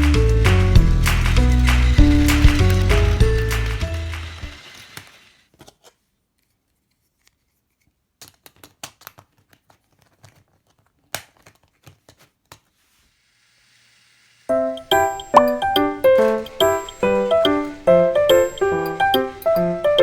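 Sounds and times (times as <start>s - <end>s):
background music: 0.0s - 4.6s, 14.5s - 20.0s
plastic toy track pieces clicking: 1.1s - 5.9s.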